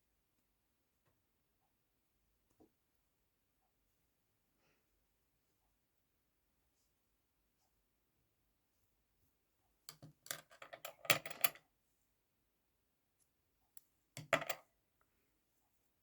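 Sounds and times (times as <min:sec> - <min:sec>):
hand sewing clicks and rustles: 0:14.2 - 0:14.6.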